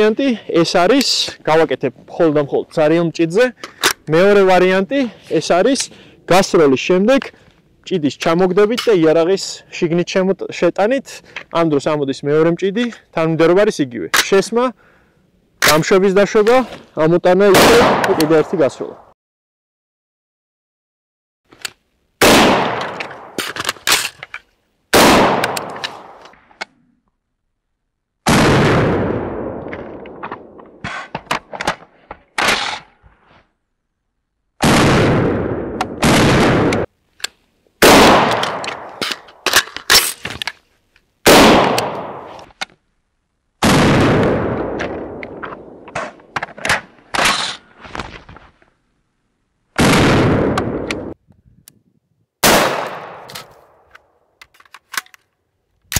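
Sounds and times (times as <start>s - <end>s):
rifle gunshots with echo: 17.4s - 19.0s, 22.2s - 23.5s, 24.9s - 26.2s, 28.3s - 30.6s, 34.6s - 36.9s, 37.8s - 39.4s, 41.3s - 42.4s, 52.4s - 53.9s
metallic clicks of reloading: 53.2s - 55.9s.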